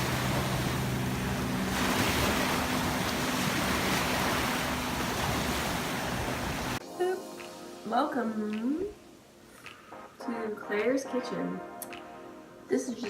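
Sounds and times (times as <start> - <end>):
low hum: 0.0 - 6.8.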